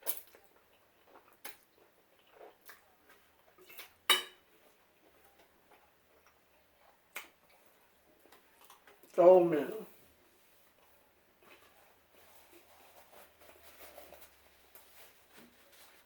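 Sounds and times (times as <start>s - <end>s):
utensil and mouth clicks eating: 0.0s - 4.0s, 5.0s - 9.2s.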